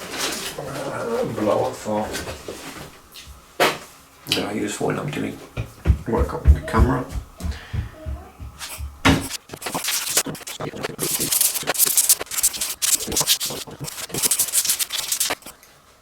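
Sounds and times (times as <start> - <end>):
knock: 5.6 - 9.3.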